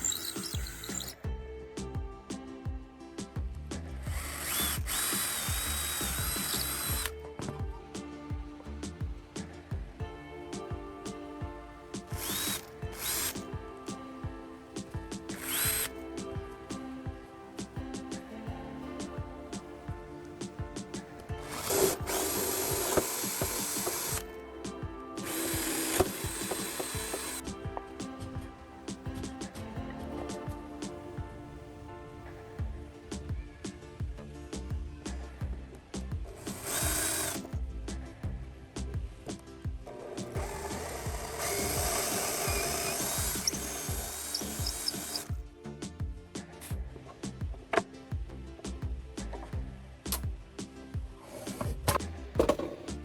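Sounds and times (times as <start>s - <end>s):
power tool running: 0.0s - 1.2s, 4.1s - 7.1s, 11.8s - 13.5s, 14.7s - 18.4s, 19.0s - 24.3s, 25.2s - 32.5s, 36.4s - 37.5s, 40.2s - 45.3s, 51.3s - 52.8s
light background music: 0.0s - 53.0s.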